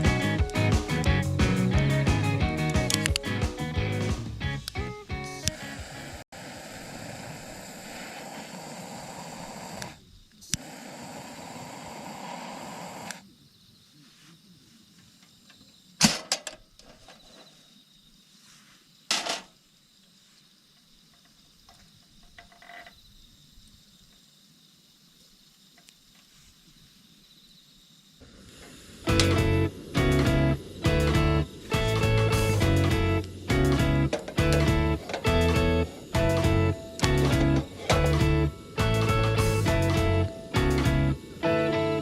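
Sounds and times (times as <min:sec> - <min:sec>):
fire crackles: 0:00.0 - 0:13.2, 0:28.2 - 0:42.0
campfire rushing noise: 0:00.0 - 0:13.3, 0:28.2 - 0:42.0.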